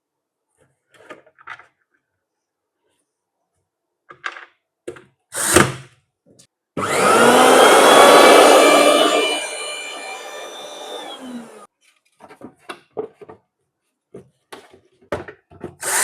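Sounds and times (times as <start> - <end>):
mixer grinder motor whining: 6.8 - 11.7.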